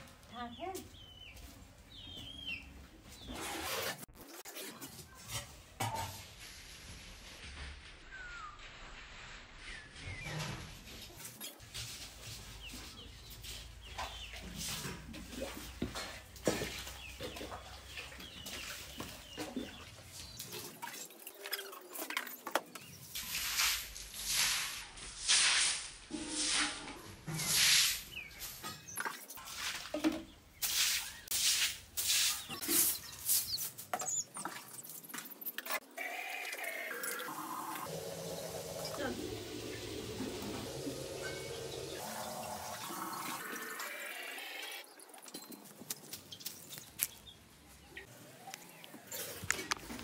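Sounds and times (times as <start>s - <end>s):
falling bird chirp: 32.1s - 49.9s
chickens clucking: 35.8s - 44.8s.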